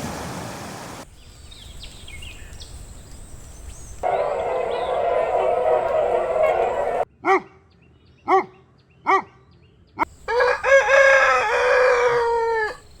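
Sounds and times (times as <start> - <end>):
rooster clucking: 4.0 - 7.0, 10.3 - 12.9
rooster crowing: 4.0 - 7.0, 10.2 - 13.0.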